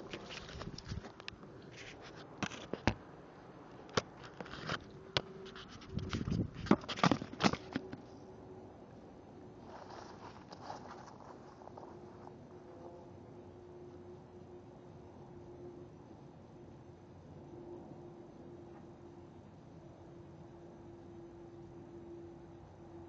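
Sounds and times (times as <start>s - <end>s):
scraping and rustling: 0.0s - 2.9s, 4.0s - 8.0s, 9.6s - 12.4s.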